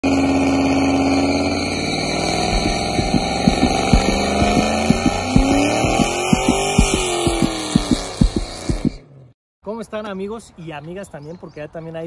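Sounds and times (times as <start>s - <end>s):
car engine running: 0.0s - 9.3s
low exhaust thumps: 2.4s - 9.0s.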